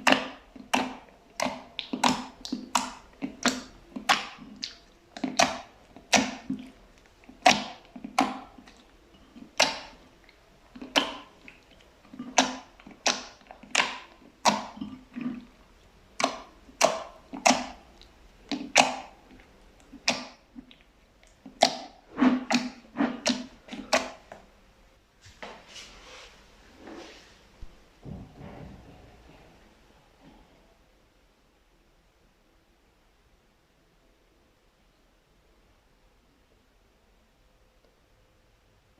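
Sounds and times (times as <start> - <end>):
fluffy slime popping: 0.0 - 6.7, 12.2 - 15.4.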